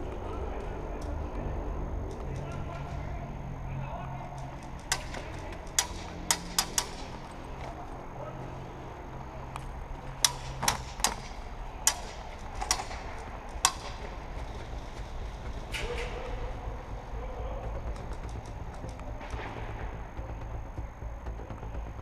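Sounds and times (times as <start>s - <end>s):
steady low rumble: 0.0s - 22.0s.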